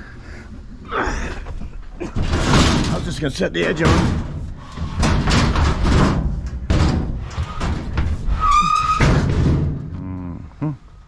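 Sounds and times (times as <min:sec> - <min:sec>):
scrap metal clattering and banging: 0:01.5 - 0:10.0.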